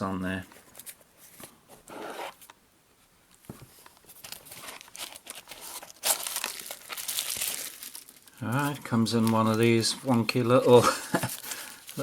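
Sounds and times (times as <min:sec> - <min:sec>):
packaging crinkling and tearing: 0:04.0 - 0:12.0.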